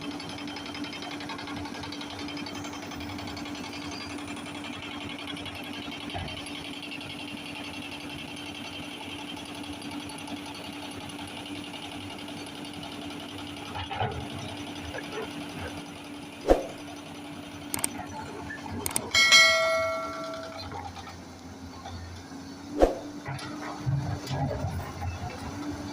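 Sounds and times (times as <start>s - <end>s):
heavy construction machinery humming: 0.0s - 25.9s
loud ringing metallic clang: 19.1s - 20.8s.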